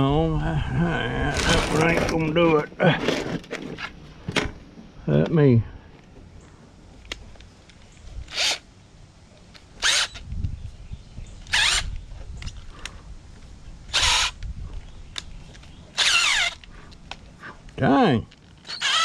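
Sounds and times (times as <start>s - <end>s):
power drill bursts: 8.3s - 8.6s, 9.8s - 10.2s, 11.5s - 11.9s, 13.9s - 14.4s, 16.0s - 16.6s, 18.6s - 19.0s.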